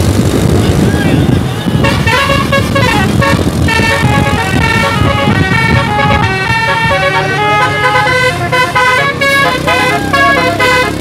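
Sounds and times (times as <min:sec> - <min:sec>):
low rumble: 0:00.0 - 0:10.4
bus musical air horn tune: 0:01.6 - 0:11.0.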